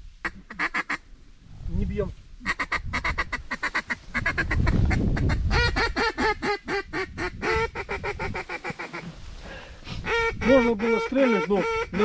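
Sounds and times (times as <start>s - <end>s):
duck call quacks: 0.2s - 1.0s, 2.4s - 9.1s, 10.0s - 12.0s.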